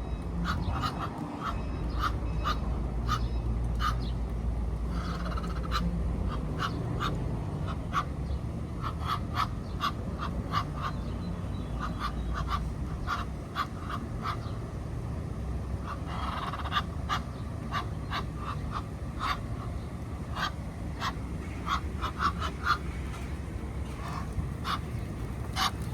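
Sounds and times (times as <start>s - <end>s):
steady low rumble: 0.0s - 25.9s
ducks quacking: 0.2s - 4.2s, 4.8s - 14.6s, 15.8s - 25.9s.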